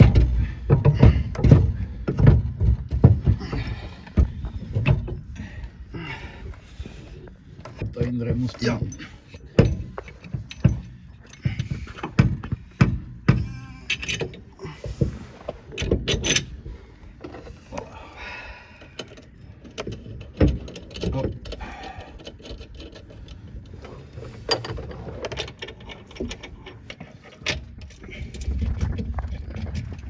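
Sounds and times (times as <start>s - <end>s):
hand tools clinking on metal: 13.3s - 14.4s.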